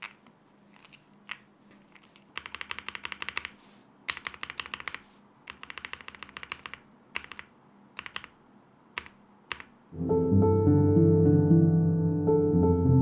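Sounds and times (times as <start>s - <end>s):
mechanical keyboard typing: 0.0s - 9.8s.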